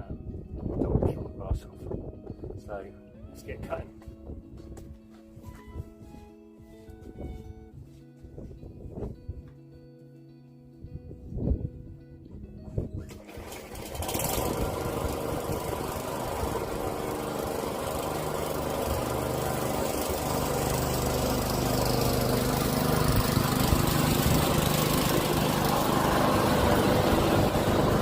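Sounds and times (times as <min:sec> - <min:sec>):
lawnmower engine running: 0:13.0 - 0:28.0.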